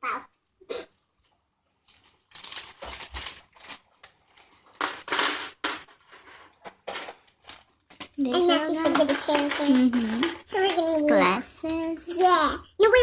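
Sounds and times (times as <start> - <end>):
plastic packaging crinkling: 1.8 - 10.9.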